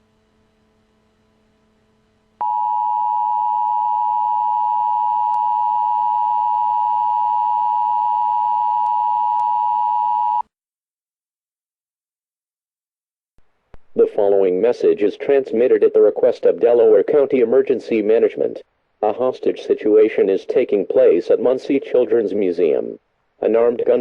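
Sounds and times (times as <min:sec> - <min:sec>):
faint hum: 0:00.0 - 0:10.4.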